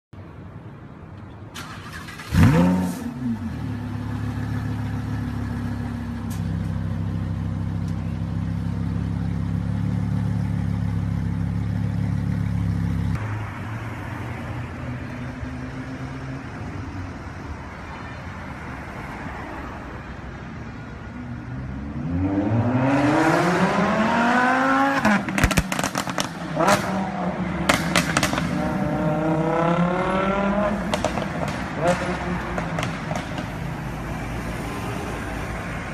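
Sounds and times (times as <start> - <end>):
car engine starting and idling: 1.4 - 15.2.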